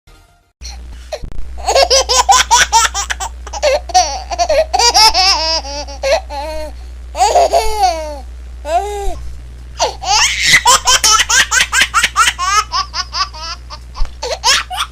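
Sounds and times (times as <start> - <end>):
low hum: 0.6 - 14.9
baby giggling: 1.6 - 6.6, 7.2 - 8.8, 9.8 - 14.9.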